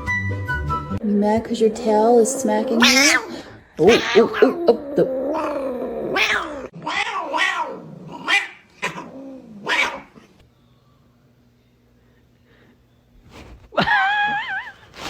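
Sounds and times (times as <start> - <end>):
cat yowling: 2.6 - 10.2.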